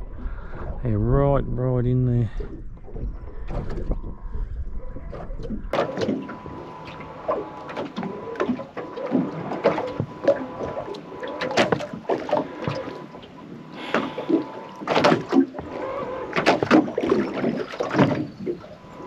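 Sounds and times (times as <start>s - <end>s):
low rumble: 0.0s - 5.8s
faint steady whine: 0.0s - 19.0s
water slapping boat hull: 2.3s - 19.0s
knocks and clatter on boat: 2.4s - 4.2s, 5.0s - 13.2s, 13.9s - 18.8s.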